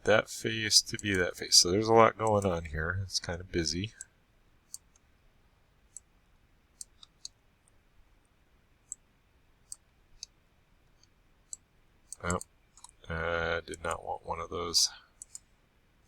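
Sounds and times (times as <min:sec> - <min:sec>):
faint computer mouse clicks: 0:04.7 - 0:05.1, 0:06.8 - 0:07.8, 0:09.7 - 0:10.4, 0:11.0 - 0:13.0, 0:15.2 - 0:15.5.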